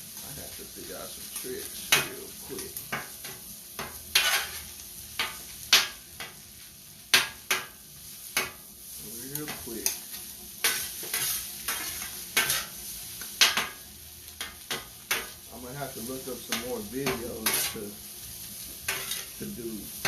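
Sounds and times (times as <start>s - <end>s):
rice sizzling: 0.0s - 20.0s
spatula scraping and clacking: 2.9s - 6.4s, 9.4s - 13.8s, 16.5s - 17.8s, 18.7s - 19.4s.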